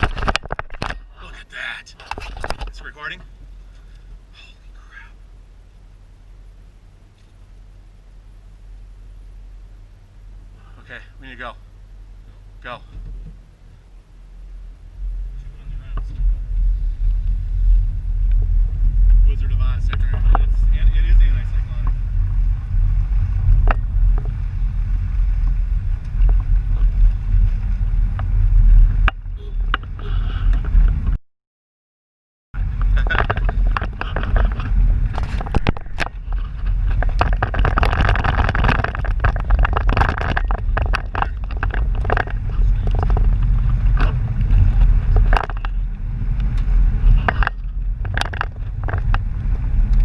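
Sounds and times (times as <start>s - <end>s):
small rattles and knocks: 0.0s - 1.0s, 2.0s - 3.9s, 12.9s - 13.5s, 23.4s - 24.4s, 32.6s - 50.0s
road and engine rumble: 0.0s - 31.2s, 32.6s - 50.0s.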